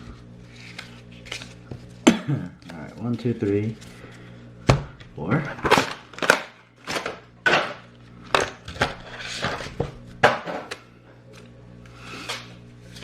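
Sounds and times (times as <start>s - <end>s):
cards clicking and rustling: 0.5s - 1.8s.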